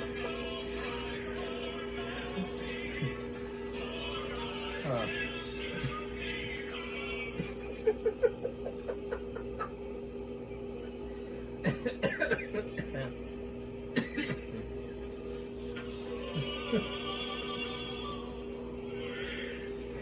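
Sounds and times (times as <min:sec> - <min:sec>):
steady low hum: 0:00.0 - 0:20.0
person snickering: 0:07.3 - 0:09.9, 0:16.2 - 0:17.2.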